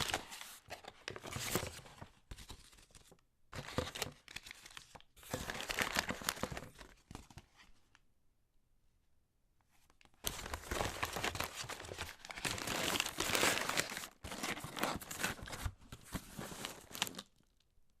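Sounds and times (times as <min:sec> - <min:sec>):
packaging crinkling and rustling: 0:00.0 - 0:07.4, 0:10.2 - 0:17.6
packaging tearing: 0:10.3 - 0:15.6.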